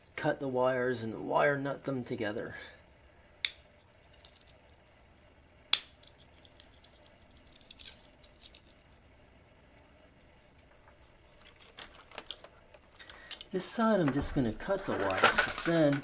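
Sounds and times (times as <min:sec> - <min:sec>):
sharp snap: 0:03.4 - 0:03.7, 0:05.7 - 0:06.0.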